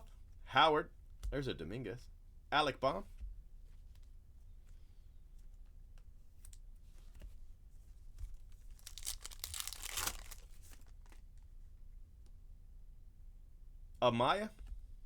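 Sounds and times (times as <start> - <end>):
card pack wrapper tearing: 8.7 - 11.2.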